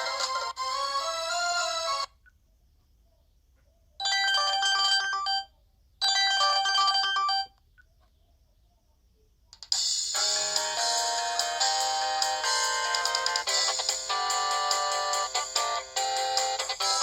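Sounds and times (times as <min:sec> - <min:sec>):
synth phone ringtone melody: 0:10.2 - 0:17.0.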